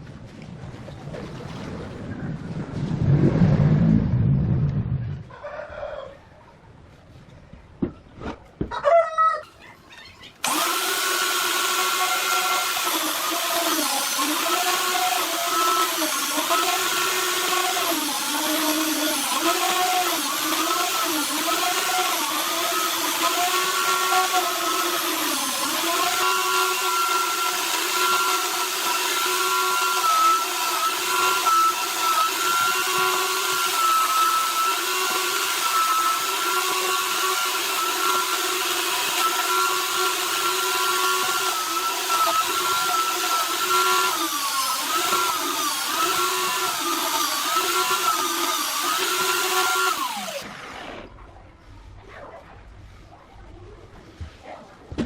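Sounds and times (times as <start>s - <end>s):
rooster crowing: 5.3s - 6.5s, 8.7s - 9.9s
angle grinder whining: 10.4s - 51.1s.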